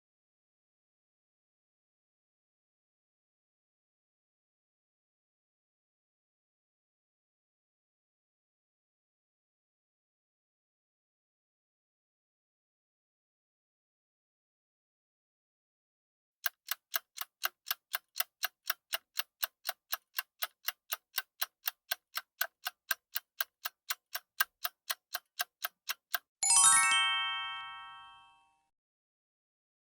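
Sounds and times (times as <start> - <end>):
clock-like ticking: 16.4 - 26.4
bell-like chime: 26.4 - 28.6.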